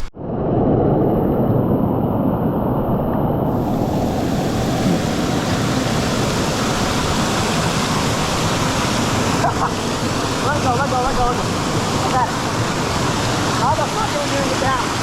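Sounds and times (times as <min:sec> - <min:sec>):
floodwater rushing over waterfalls: 0:03.5 - 0:15.0.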